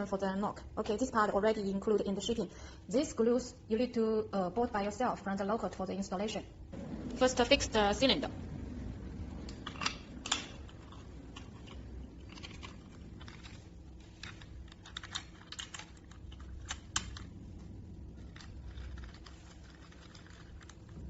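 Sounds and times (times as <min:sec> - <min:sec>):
metal lock parts clicking: 0:09.5 - 0:13.6, 0:14.2 - 0:17.3.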